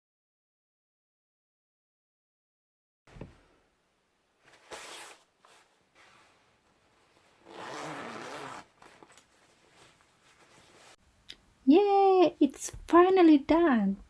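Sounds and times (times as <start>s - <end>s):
zipper rasping: 7.4s - 10.8s.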